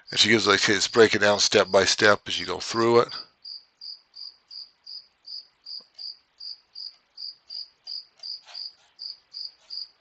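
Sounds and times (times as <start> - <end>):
cricket chirping: 3.4 - 10.0.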